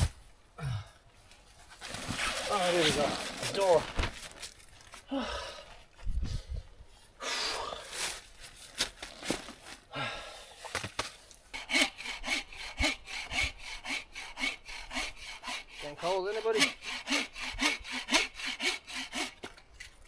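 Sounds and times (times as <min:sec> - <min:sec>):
hand saw cutting wood: 0:00.0 - 0:00.2, 0:11.5 - 0:19.9.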